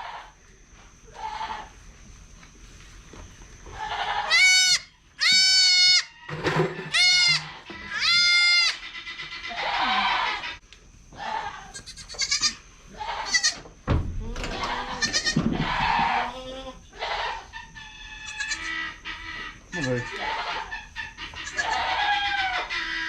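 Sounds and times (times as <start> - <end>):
goats bleating: 1.1 - 1.7, 3.8 - 6.1, 6.8 - 13.6, 14.4 - 23.0.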